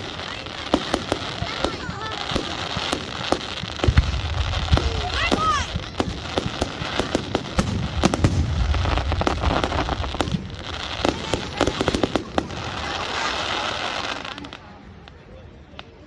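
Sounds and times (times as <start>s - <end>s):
fireworks bangs and pops: 0.0s - 16.0s
fireworks crackling hiss: 0.0s - 16.0s
low booms: 2.8s - 12.6s.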